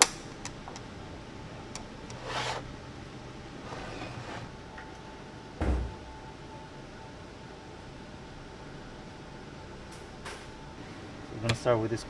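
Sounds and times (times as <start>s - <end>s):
air conditioning hum: 0.0s - 12.0s.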